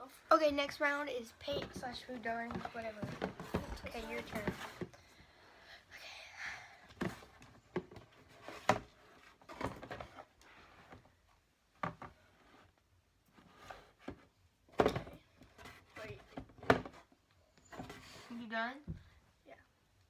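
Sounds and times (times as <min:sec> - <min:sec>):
knocks and taps of handled objects: 0:01.4 - 0:05.0, 0:18.8 - 0:19.2.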